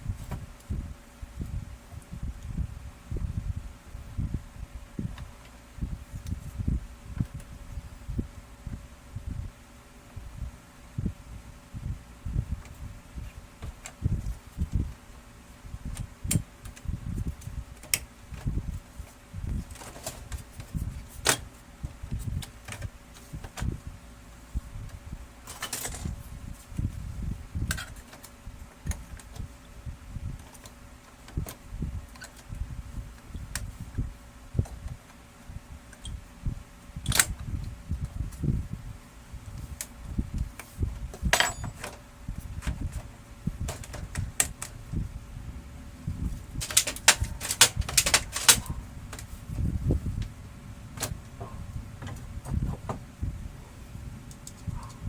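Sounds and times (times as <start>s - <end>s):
small parts clicking and knocking: 40.6s - 42.0s, 46.6s - 49.3s.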